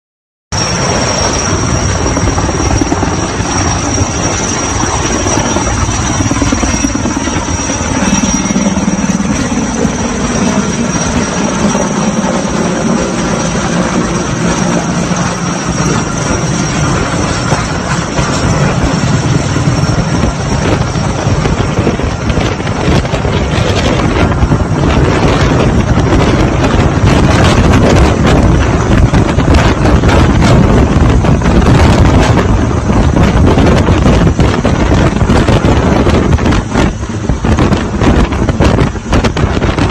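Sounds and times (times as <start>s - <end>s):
helicopter rotor beating: 0.5s - 39.9s
thin high whine: 0.6s - 12.1s.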